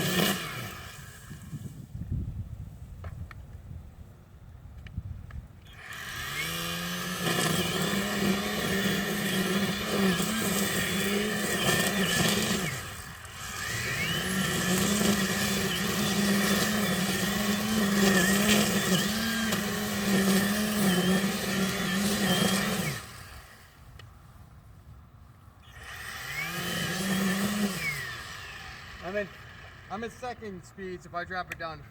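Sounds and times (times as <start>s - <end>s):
string trimmer motor running: 0.0s - 1.8s, 5.6s - 24.1s, 25.6s - 31.6s.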